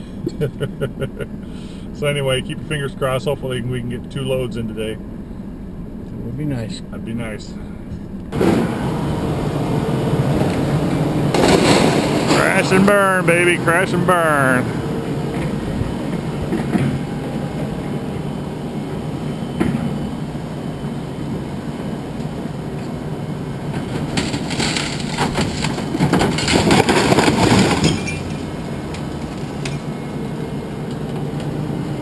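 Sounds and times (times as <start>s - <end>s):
engine running steadily: 0.0s - 32.0s
sheet metal crashing and clattering: 11.3s - 13.0s, 23.9s - 28.5s.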